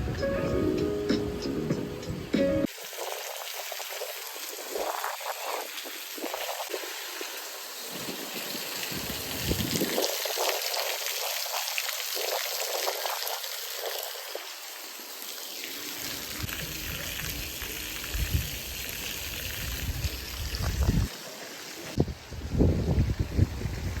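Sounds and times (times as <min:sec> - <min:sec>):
water trickling and pouring: 0:02.7 - 0:22.0.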